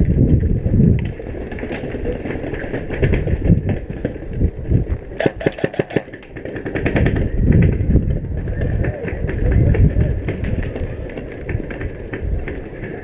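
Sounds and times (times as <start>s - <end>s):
airsoft gun shots: 5.2s - 6.2s.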